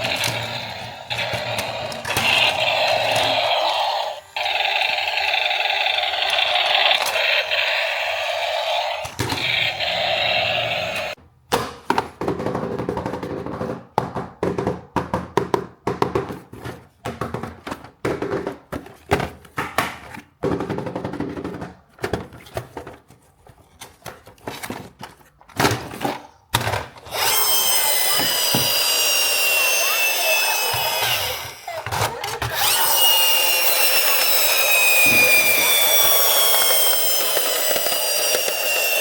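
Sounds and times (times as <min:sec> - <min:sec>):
high multi-tone whirring: 0:00.0 - 0:11.2, 0:27.1 - 0:39.0.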